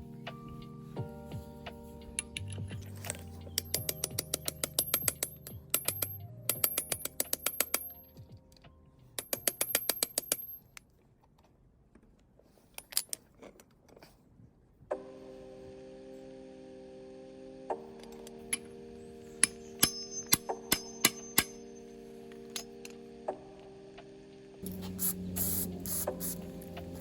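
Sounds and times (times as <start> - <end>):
socket ratchet clicking: 3.6 - 8.0, 9.2 - 10.5.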